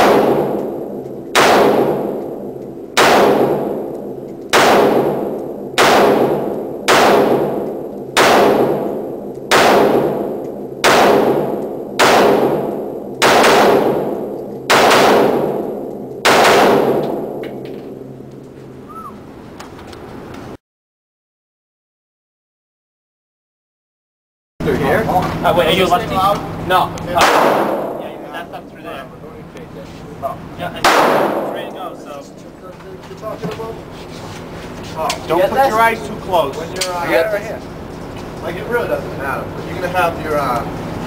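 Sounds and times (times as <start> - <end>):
gunshots echoing: 0.0 - 18.4, 27.1 - 29.1, 30.8 - 32.6.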